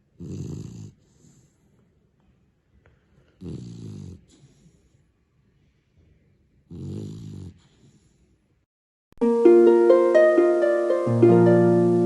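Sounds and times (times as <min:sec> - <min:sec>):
puppy snoring: 0:00.0 - 0:01.5, 0:03.4 - 0:04.8, 0:06.7 - 0:08.4
plucked-string music: 0:09.2 - 0:12.0.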